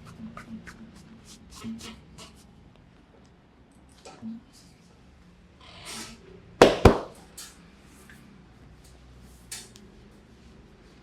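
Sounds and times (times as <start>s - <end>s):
sharp hand slaps: 6.6s - 7.2s.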